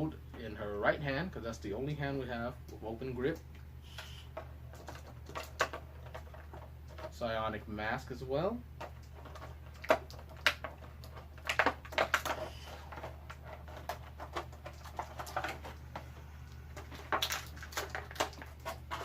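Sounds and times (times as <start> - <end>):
steady low hum: 0.0 - 19.0
packaging rustling: 8.8 - 19.0
plastic pieces clicking: 8.8 - 19.0.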